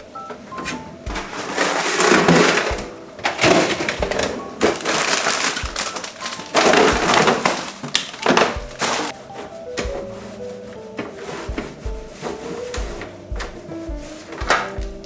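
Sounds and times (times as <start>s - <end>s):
soft background music: 0.0s - 15.0s
plastic packaging crinkling: 1.2s - 9.7s.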